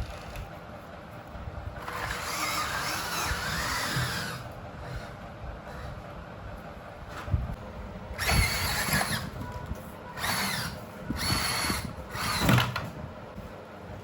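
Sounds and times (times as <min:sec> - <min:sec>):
electric motor whining: 0:01.8 - 0:05.1, 0:08.2 - 0:12.8.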